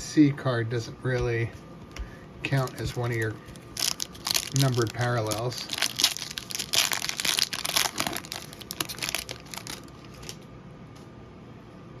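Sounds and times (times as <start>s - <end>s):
card pack wrapper crinkling: 2.5s - 10.5s.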